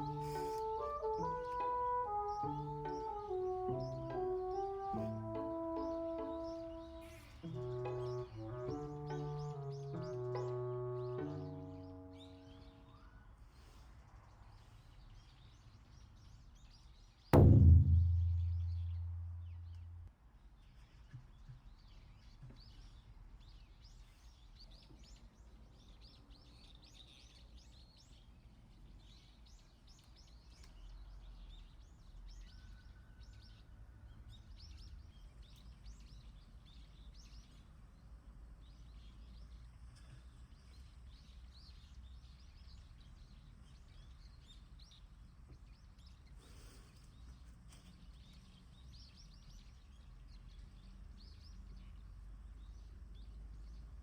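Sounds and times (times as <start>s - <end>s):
birds chirping: 0.0s - 13.3s
low steady rumble: 17.4s - 20.1s.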